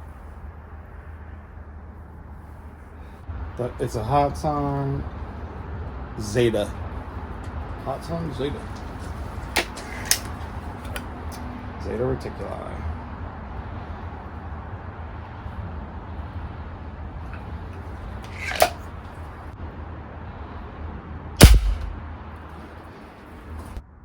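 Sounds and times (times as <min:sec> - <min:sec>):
air rifle shot: 0:21.4 - 0:22.0.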